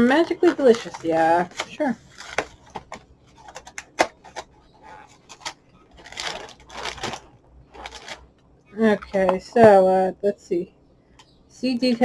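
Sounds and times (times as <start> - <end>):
cardboard box rustling: 0.0 - 8.3.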